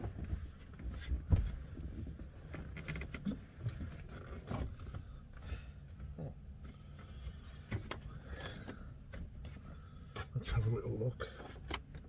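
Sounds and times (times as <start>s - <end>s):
footsteps in a van: 0.0s - 2.8s.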